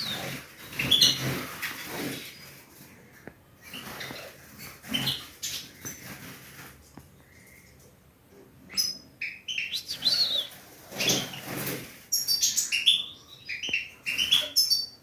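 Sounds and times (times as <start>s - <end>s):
wings fluttering and rustling: 0.0s - 8.0s, 9.9s - 12.5s
finches chirping: 8.7s - 15.0s.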